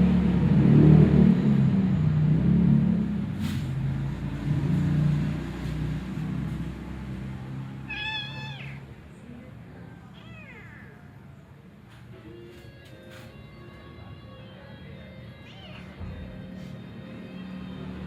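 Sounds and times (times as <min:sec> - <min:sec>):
cat meowing: 0:07.8 - 0:08.9, 0:10.0 - 0:11.5, 0:15.4 - 0:16.1.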